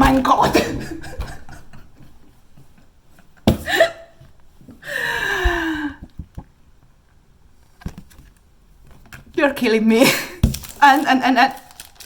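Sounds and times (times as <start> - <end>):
woman gasping: 3.6 - 4.1, 4.8 - 6.1.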